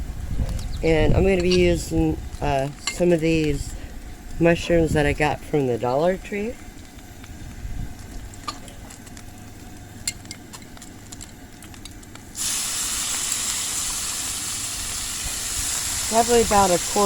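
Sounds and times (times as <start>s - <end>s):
low steady rumble: 0.0s - 17.0s
mushrooms sizzling in a skillet: 12.4s - 17.0s.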